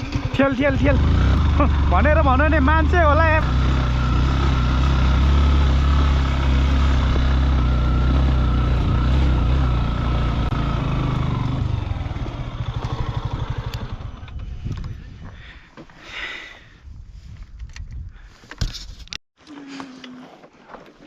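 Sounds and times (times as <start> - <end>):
motorcycle engine idling: 0.0 - 15.1.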